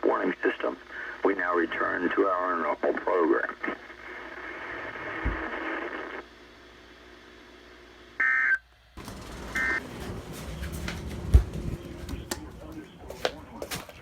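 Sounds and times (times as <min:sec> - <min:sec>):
radio static hiss: 0:00.0 - 0:08.3, 0:11.6 - 0:14.0.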